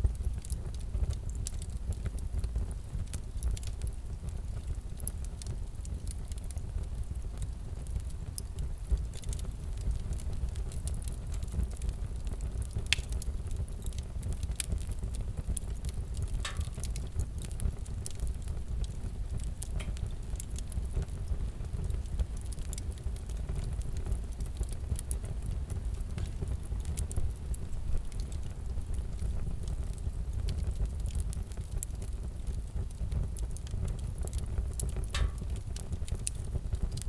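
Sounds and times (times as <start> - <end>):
fire low rumble: 0.0 - 37.0
fire popping and snapping: 0.0 - 37.0.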